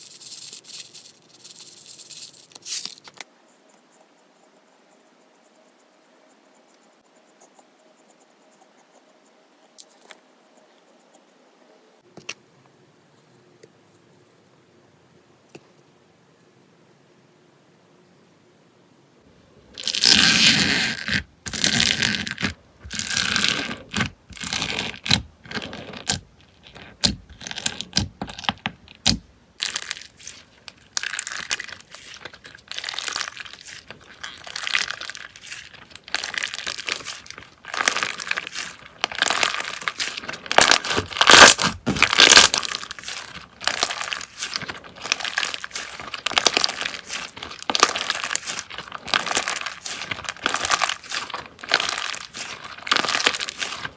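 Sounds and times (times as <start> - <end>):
slime crackling and squelching: 19.8 - 53.9.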